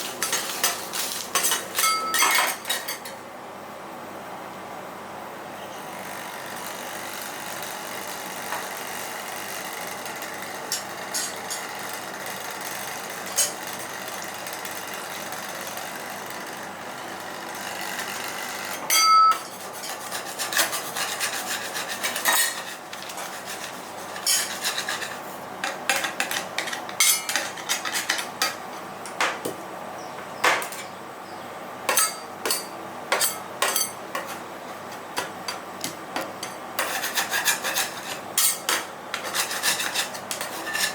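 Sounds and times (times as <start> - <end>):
metal spatulas tapping and scraping: 0.0 - 3.2, 10.7 - 11.7, 13.2 - 13.8, 18.7 - 29.5, 31.9 - 40.9
loud ringing clang: 1.8 - 2.4, 18.9 - 19.4.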